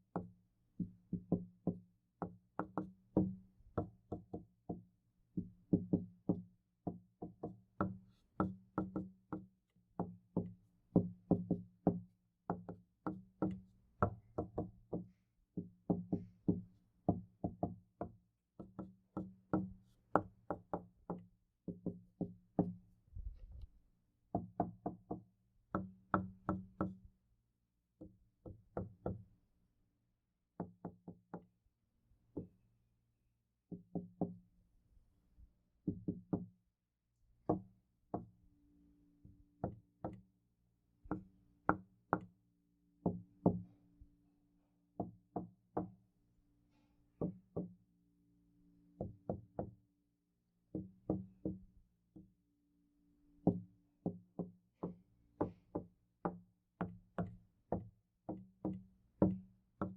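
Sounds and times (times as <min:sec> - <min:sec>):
knocking on a door: 0:05.4 - 0:22.8, 0:35.9 - 0:36.5, 0:50.7 - 0:51.6, 0:53.5 - 0:59.9.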